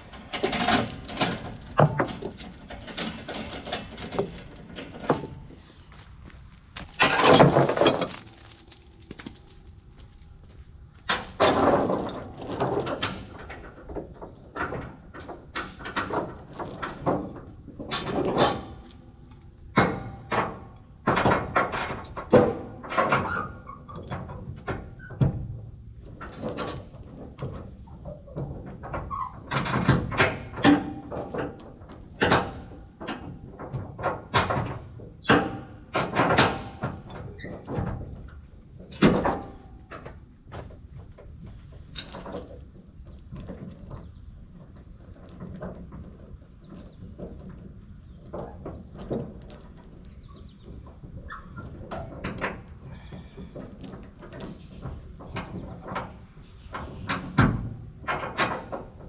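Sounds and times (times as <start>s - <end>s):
irregular knocks and clanks: 0.0s - 5.5s.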